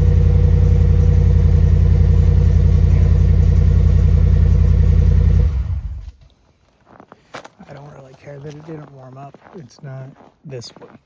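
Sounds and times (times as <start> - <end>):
truck engine idling: 0.0 - 6.2.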